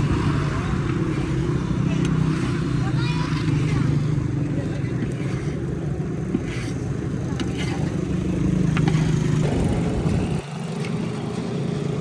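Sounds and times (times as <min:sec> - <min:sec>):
low engine drone: 0:08.4 - 0:12.0.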